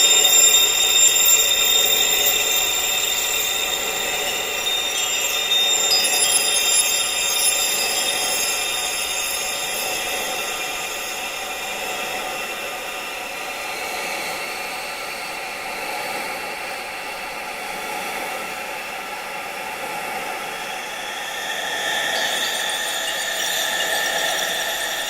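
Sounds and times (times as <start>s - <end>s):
sustained high-pitched tones: 0.0s - 13.7s, 20.4s - 25.0s.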